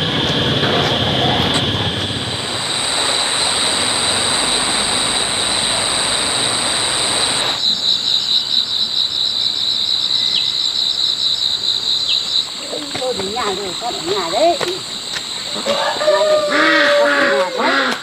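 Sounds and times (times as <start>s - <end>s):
steady rushing noise: 0.0s - 7.6s
high insect drone: 0.0s - 18.0s
insects chirping: 0.0s - 18.0s.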